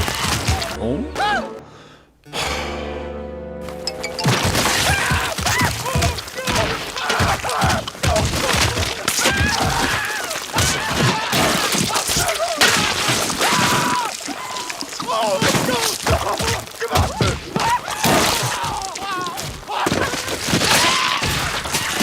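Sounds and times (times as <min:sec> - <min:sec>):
thuds and crashing impacts: 0:04.2 - 0:13.4.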